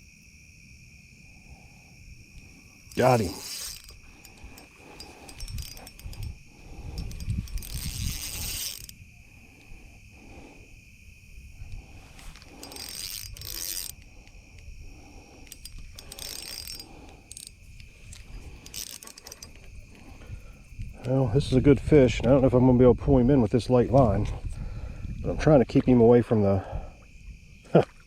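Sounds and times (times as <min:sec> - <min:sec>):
high insect drone: 0:00.0 - 0:28.0
fishing reel drag buzzing: 0:02.3 - 0:10.7, 0:11.6 - 0:21.1.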